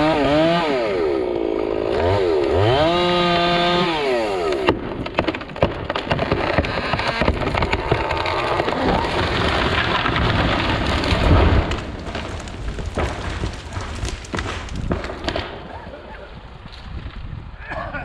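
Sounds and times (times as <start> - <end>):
debris crackling: 0.0 - 18.0
tree falling with cracking wood: 0.0 - 18.0
heavy crash: 4.7 - 16.0.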